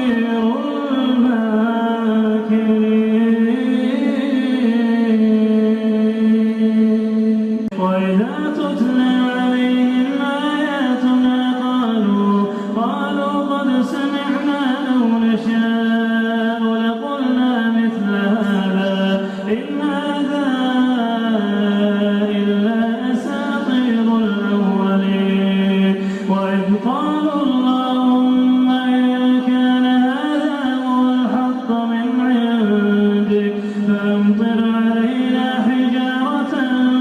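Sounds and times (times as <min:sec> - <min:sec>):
man chanting melodic recitation: 0:00.0 - 0:37.0
breaths: 0:12.4 - 0:12.8, 0:19.2 - 0:19.5, 0:25.9 - 0:26.3, 0:33.5 - 0:33.9.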